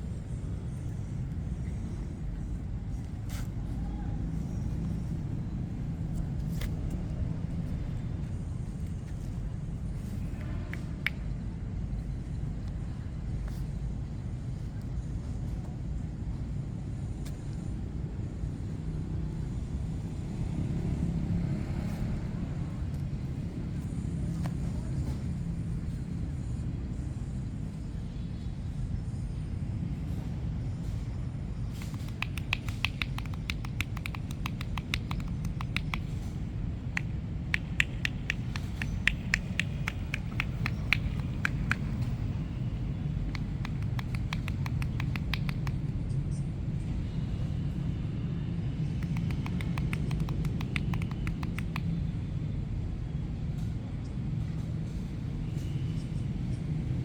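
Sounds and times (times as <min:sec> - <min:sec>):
low rumble of street traffic: 0:00.0 - 0:57.0
hands slapping skin: 0:31.7 - 0:42.3, 0:43.2 - 0:45.9, 0:49.0 - 0:51.9
sharp click: 0:31.8 - 0:36.1, 0:37.0 - 0:42.2, 0:43.3 - 0:45.8, 0:49.0 - 0:51.9.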